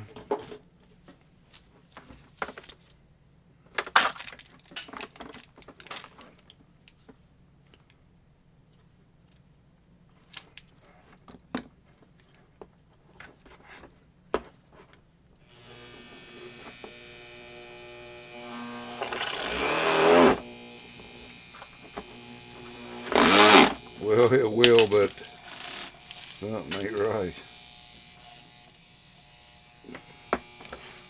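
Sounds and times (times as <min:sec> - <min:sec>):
rotary tool motor whining: 0:15.5 - 0:31.0
small clicks and knocks: 0:29.9 - 0:31.0.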